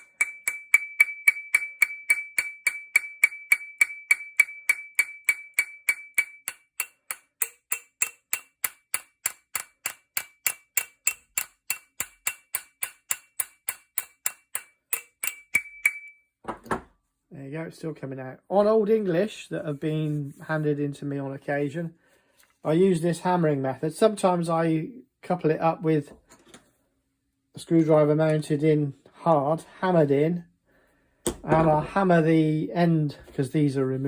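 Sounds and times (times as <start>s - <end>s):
small hammer tapping steel: 0.0s - 16.2s.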